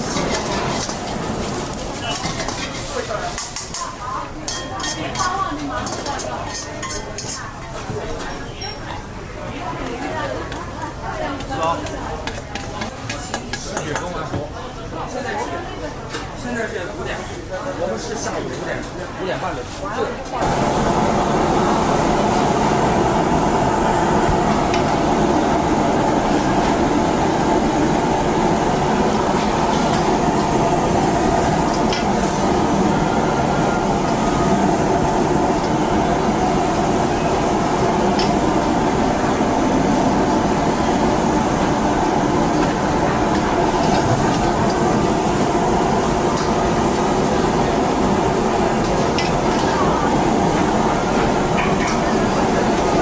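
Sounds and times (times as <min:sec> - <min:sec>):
wok stove roaring: 0:00.0 - 0:07.6, 0:20.4 - 0:53.0
food frying: 0:20.4 - 0:53.0.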